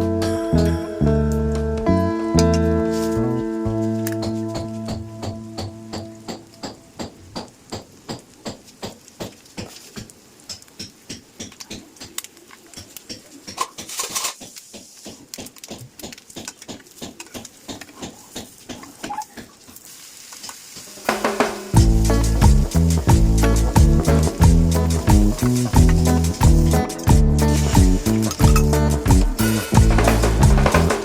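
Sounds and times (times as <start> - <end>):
loud background music: 21.8 - 31.0.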